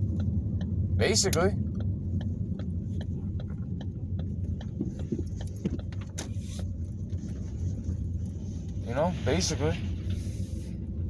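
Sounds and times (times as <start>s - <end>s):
turn signal ticking: 0.0s - 8.8s
road and engine rumble: 0.0s - 11.0s.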